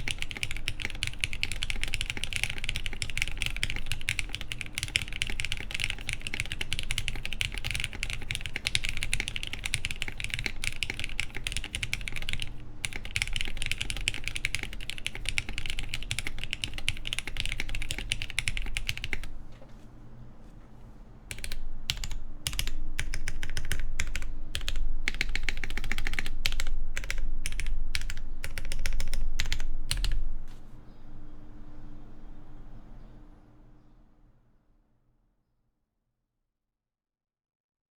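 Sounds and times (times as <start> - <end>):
typing on mechanical keyboard: 0.0 - 19.4, 21.3 - 30.2.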